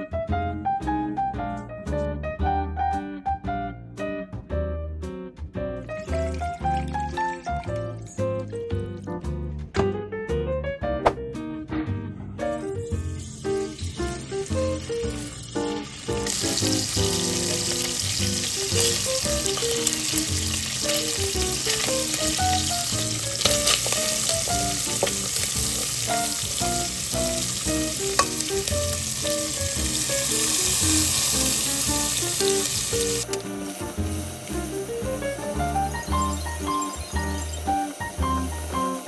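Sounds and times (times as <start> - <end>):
food sizzling in a pan: 13.0 - 39.0.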